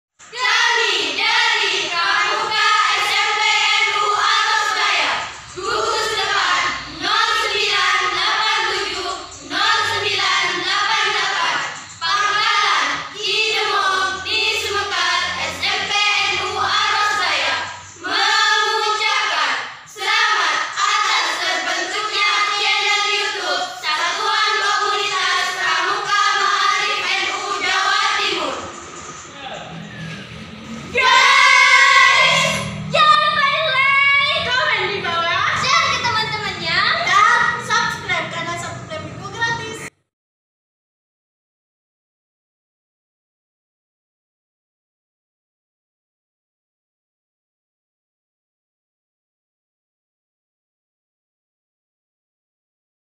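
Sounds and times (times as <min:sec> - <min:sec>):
young voices singing together: 0:00.2 - 0:39.9.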